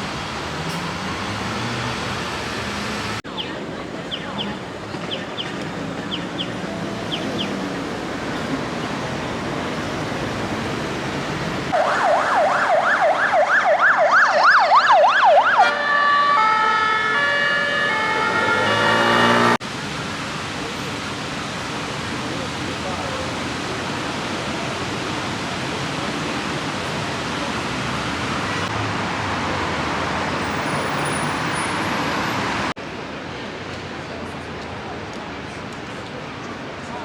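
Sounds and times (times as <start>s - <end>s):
street traffic noise: 0.0s - 37.0s
emergency vehicle siren: 11.7s - 19.6s.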